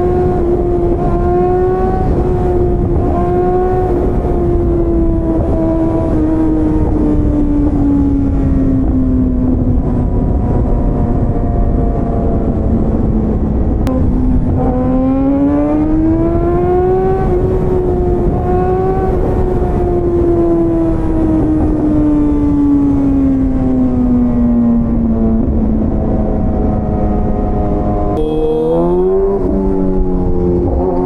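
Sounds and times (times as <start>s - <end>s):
wind noise: 0.0s - 27.1s
motorcycle engine running: 28.2s - 29.5s
road noise: 28.2s - 31.0s.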